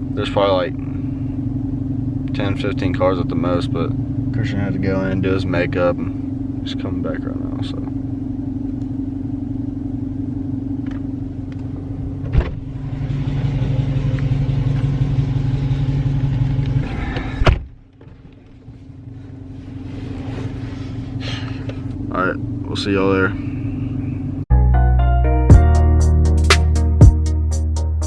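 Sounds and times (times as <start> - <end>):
car engine idling: 0.0 - 24.5
car door slamming: 12.1 - 12.8, 17.1 - 18.2.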